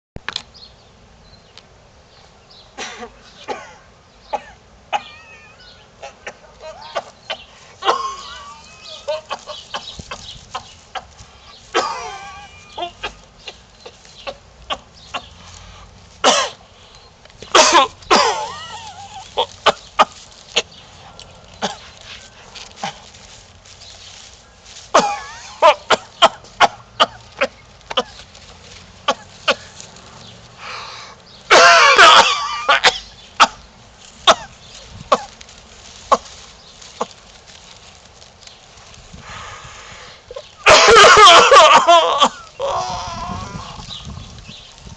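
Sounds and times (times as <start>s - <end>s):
person coughing: 2.8s - 3.8s, 6.0s - 8.5s, 11.7s - 12.3s, 16.2s - 16.6s, 17.5s - 18.7s, 24.9s - 28.1s, 31.5s - 33.6s, 40.6s - 42.4s.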